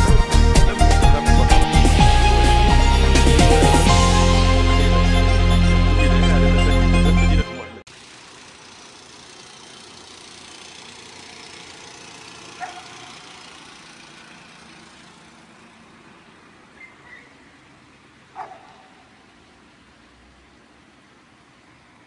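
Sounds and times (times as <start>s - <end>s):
music: 0.0s - 7.8s
street traffic hum: 0.0s - 22.0s.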